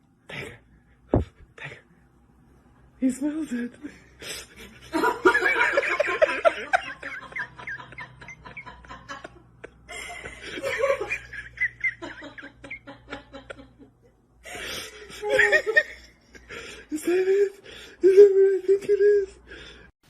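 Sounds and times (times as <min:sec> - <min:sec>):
person laughing: 0:04.3 - 0:19.4.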